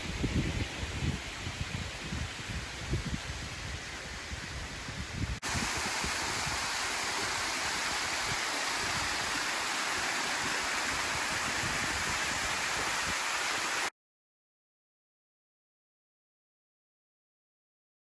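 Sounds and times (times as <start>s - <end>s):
waterfall rushing: 5.4s - 13.9s.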